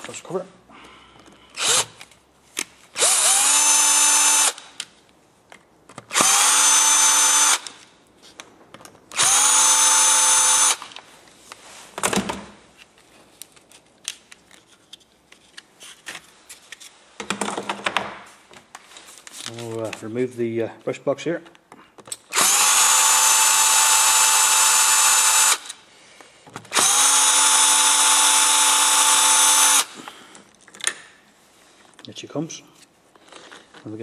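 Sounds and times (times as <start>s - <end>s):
cordless drill whining: 1.5s - 2.1s, 3.0s - 4.7s, 6.1s - 7.8s, 9.1s - 11.0s, 22.3s - 25.8s, 26.7s - 30.2s.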